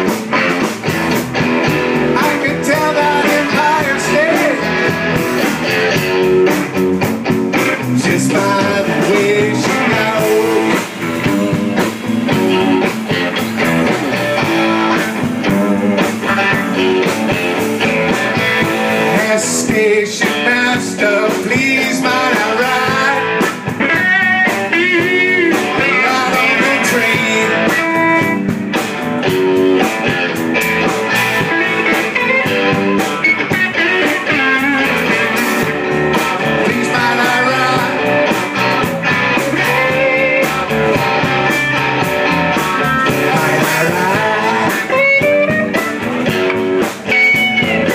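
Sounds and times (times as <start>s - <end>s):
blues band playing: 0.0s - 47.9s
drums steady beat: 0.0s - 47.9s
guitar: 0.0s - 47.9s
person singing: 2.1s - 5.0s, 7.8s - 11.8s, 14.4s - 17.1s, 19.0s - 28.2s, 36.1s - 38.8s, 39.4s - 45.8s.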